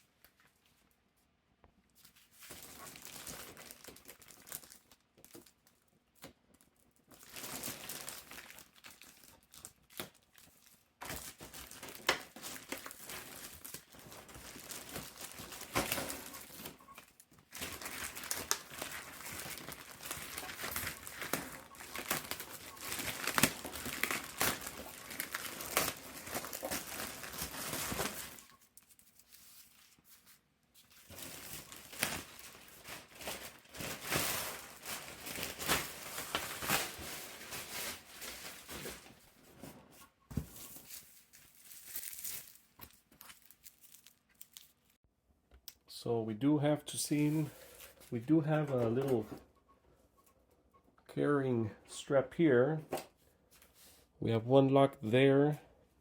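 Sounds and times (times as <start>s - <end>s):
plastic wrap tearing and crinkling: 2.0s - 39.2s, 40.5s - 45.0s.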